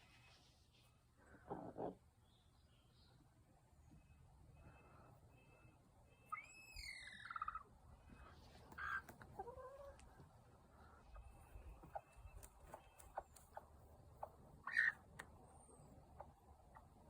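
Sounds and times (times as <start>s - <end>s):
chicken squawking: 6.3s - 7.7s, 8.7s - 9.9s, 14.2s - 15.0s.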